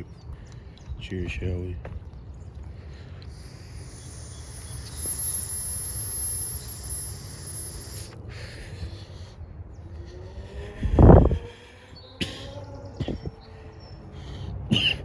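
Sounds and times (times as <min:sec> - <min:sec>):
low wind-like rumble: 0:00.0 - 0:14.2
high hiss with whistling tone: 0:03.3 - 0:08.2.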